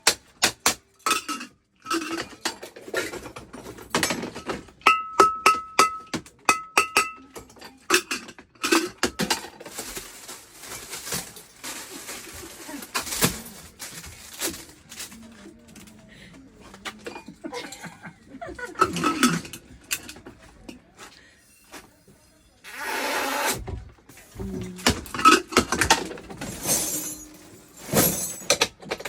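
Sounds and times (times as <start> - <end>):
metal cookware clattering: 24.8 - 29.0.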